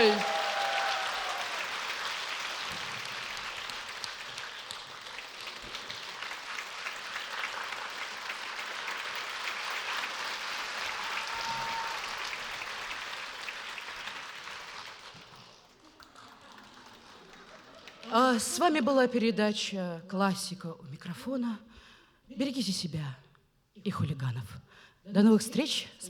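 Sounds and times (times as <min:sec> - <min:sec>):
audience applauding: 0:00.0 - 0:18.4.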